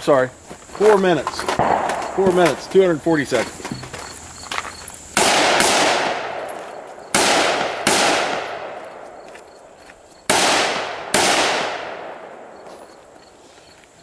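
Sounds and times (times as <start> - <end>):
rifle shots with echo: 0.8 - 3.5, 5.2 - 9.2, 10.3 - 12.6.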